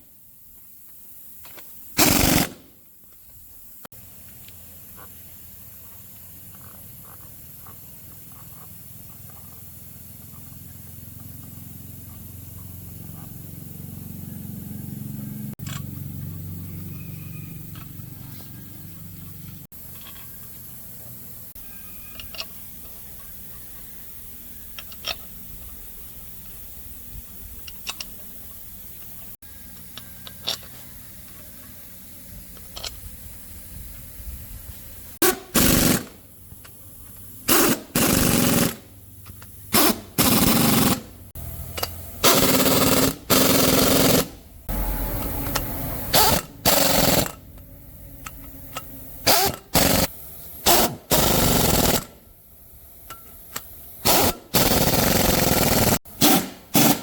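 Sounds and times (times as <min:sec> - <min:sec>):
pneumatic tool bursts: 0:01.4 - 0:02.8, 0:35.2 - 0:47.4, 0:48.7 - 0:52.2, 0:53.0 - 0:57.0.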